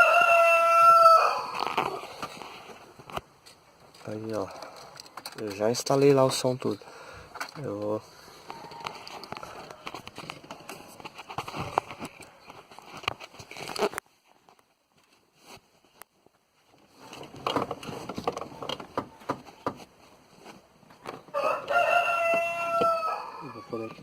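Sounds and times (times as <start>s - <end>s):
wiring clicks and rustles: 1.5s - 15.2s.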